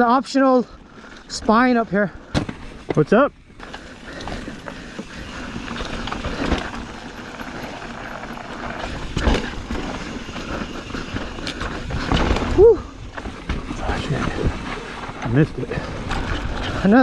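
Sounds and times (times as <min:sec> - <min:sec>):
bike tyres rumbling on dirt: 0:03.6 - 0:17.0
wheels knocking on rocks: 0:06.2 - 0:13.7.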